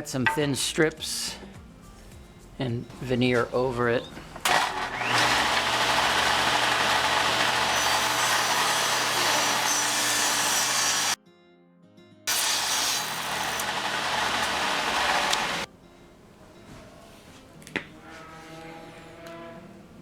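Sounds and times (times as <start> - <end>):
electric power saw cutting wood: 4.4 - 11.2, 12.3 - 15.7.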